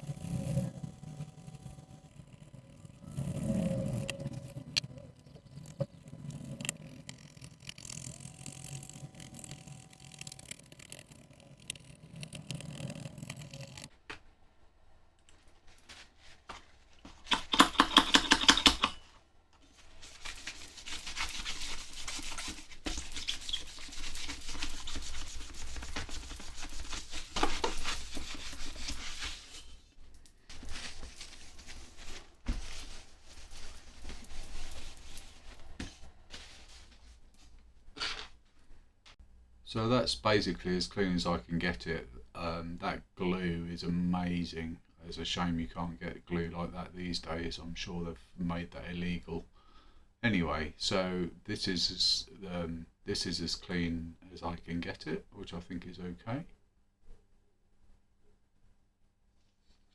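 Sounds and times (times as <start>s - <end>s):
scrubbing and scraping adhesive: 0.0s - 14.0s, 16.8s - 38.4s
handling noises: 2.6s - 39.2s.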